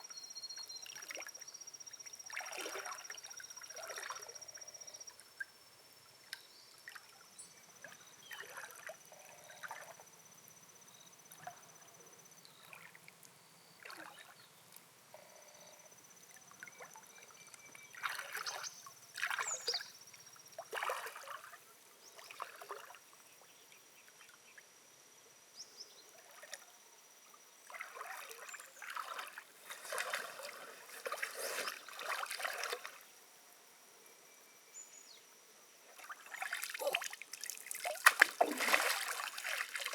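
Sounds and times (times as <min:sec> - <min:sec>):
water splashing and trickling: 0:02.3 - 0:04.4, 0:06.7 - 0:10.0, 0:13.8 - 0:14.4, 0:16.4 - 0:19.8, 0:20.6 - 0:23.0, 0:27.6 - 0:33.1, 0:35.9 - 0:39.9.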